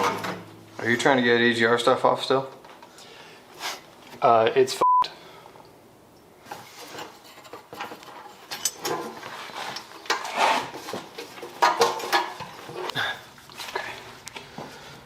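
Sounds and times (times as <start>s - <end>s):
hand tools scraping on metal: 6.6s - 12.9s.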